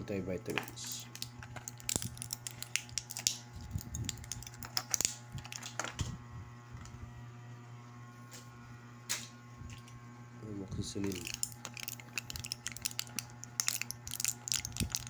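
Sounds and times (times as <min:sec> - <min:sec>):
steady low hum: 0:00.0 - 0:15.0
small hard objects clicking: 0:00.5 - 0:05.8, 0:11.0 - 0:15.0.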